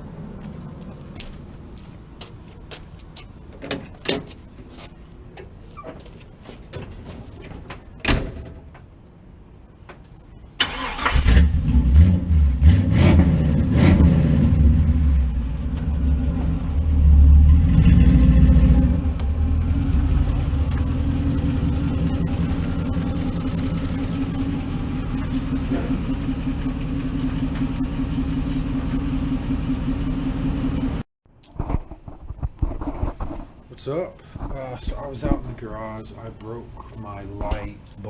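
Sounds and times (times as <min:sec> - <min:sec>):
car engine starting and rumbling: 0:10.5 - 0:31.0.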